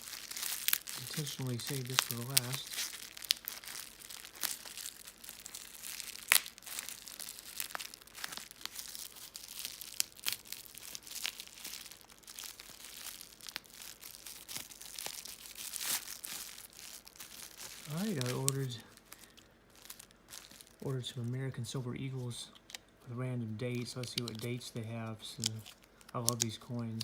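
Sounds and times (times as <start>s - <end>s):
packaging clicks: 0.0s - 10.4s, 23.8s - 24.6s, 25.4s - 27.0s
packaging crinkling and tearing: 0.0s - 22.9s, 23.6s - 27.0s.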